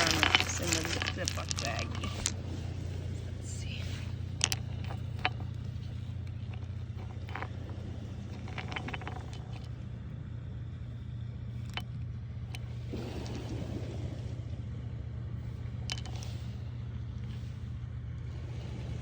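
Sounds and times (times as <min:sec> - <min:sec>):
small stones clicking: 0:00.0 - 0:02.6, 0:03.6 - 0:09.7
short rustle: 0:00.0 - 0:07.5
steady low rumble: 0:00.0 - 0:19.0.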